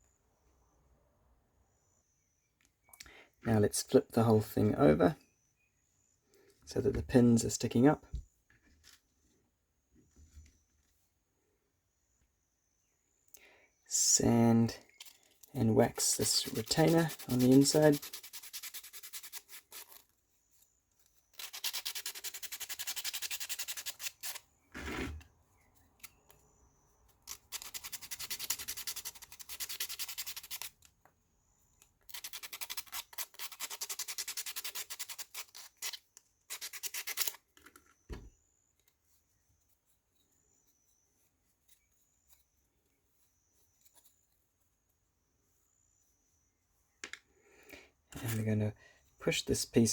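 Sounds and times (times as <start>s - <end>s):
sandpaper rubbing on wood: 15.9s - 20.0s, 21.4s - 25.2s, 27.3s - 30.8s, 32.1s - 37.4s.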